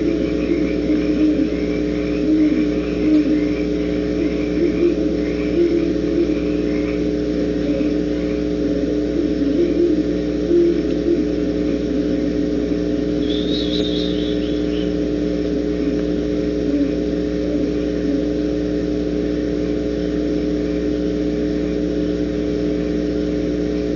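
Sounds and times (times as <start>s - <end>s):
steady electrical hum: 0.0s - 23.9s.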